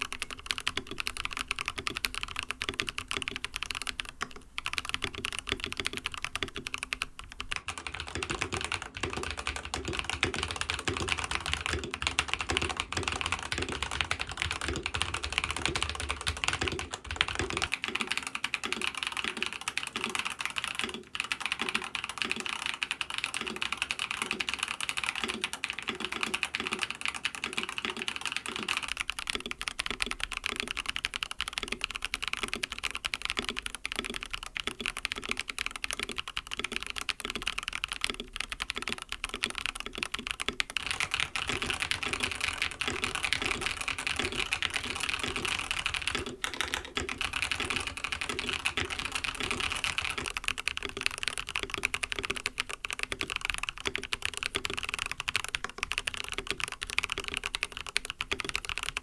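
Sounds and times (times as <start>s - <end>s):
mechanical keyboard typing: 0.0s - 59.0s.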